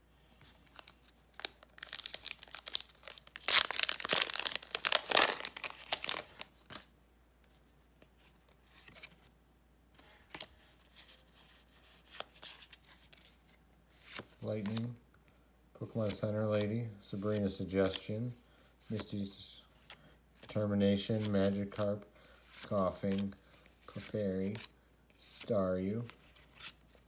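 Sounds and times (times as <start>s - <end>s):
cards rustling and clicking: 0.4s - 9.3s, 10.0s - 27.0s
wrapper tearing and crinkling: 1.3s - 6.5s.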